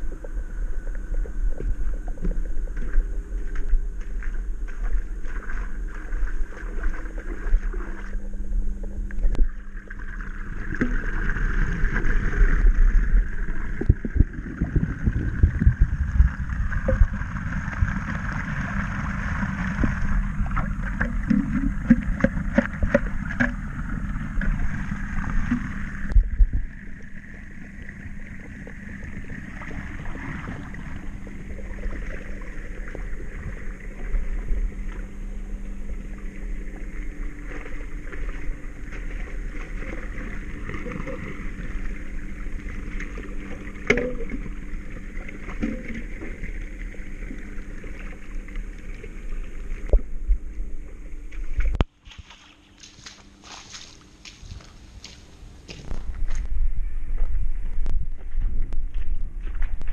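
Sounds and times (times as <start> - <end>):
water sloshing and gurgling in drain: 0.0 - 54.8
splashes and knocks: 10.7 - 12.2, 19.6 - 23.7, 43.8 - 44.5, 45.5 - 46.4, 51.3 - 54.7
wind on microphone: 12.6 - 23.8, 24.6 - 26.8.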